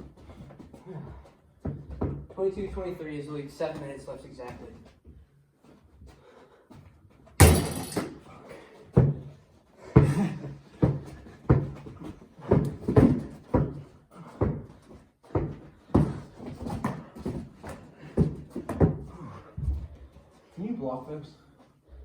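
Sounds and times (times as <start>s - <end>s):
loud ringing slam: 7.4s - 8.0s
basketball dribbling on hard floor: 10.8s - 19.1s.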